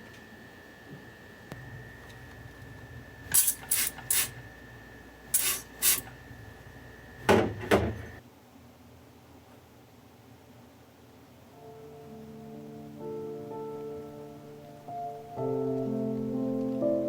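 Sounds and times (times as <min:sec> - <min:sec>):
short hissing bursts: 0:03.3 - 0:04.4, 0:05.3 - 0:06.2.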